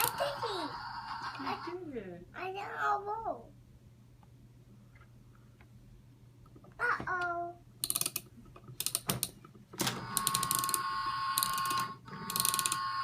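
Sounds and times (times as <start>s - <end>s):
toy pieces clicking: 0.0s - 0.3s, 7.8s - 9.4s, 10.1s - 13.0s.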